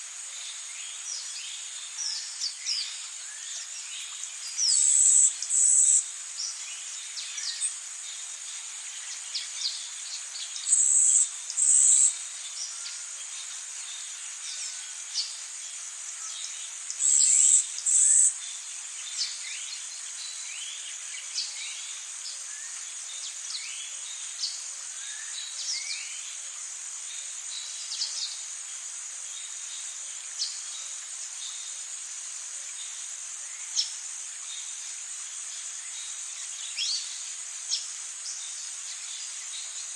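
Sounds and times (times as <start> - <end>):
high-pitched insect drone: 4.7 - 6.1, 10.7 - 13.5, 17.0 - 18.4.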